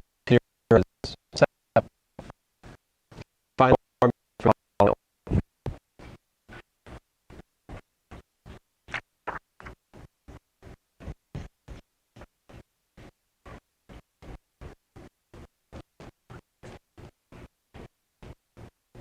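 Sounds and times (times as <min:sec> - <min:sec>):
stuttering audio blips: 0:04.4 - 0:19.0.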